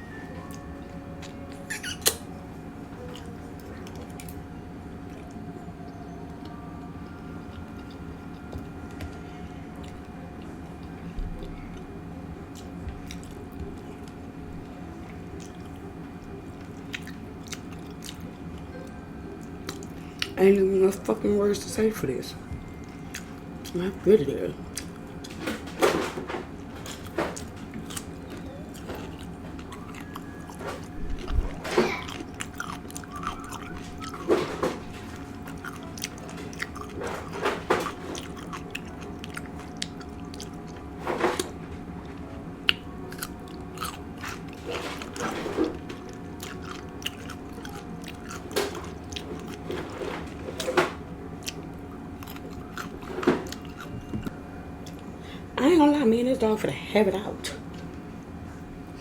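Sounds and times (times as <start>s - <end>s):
person chewing food: 12.5s - 14.3s, 15.1s - 18.7s, 19.4s - 20.4s, 22.8s - 23.8s, 24.7s - 25.6s, 26.5s - 55.1s
crunching bite: 42.7s - 45.4s.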